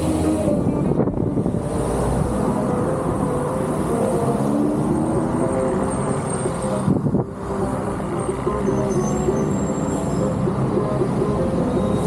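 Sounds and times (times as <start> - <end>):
road and traffic noise: 0.0 - 12.0
wind rumbling on microphone: 0.3 - 2.4, 6.8 - 7.5.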